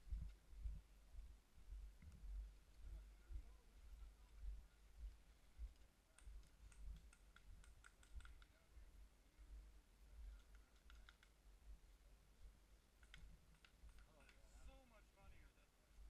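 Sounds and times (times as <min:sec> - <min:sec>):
faint sharp clicks: 0:05.7 - 0:08.6, 0:10.3 - 0:11.4, 0:13.0 - 0:14.6.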